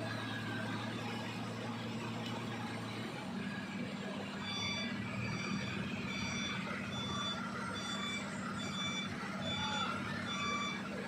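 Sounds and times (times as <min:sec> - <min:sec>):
diesel engine running: 0:00.0 - 0:11.0
vehicle reversing alarm beeping: 0:02.6 - 0:11.0.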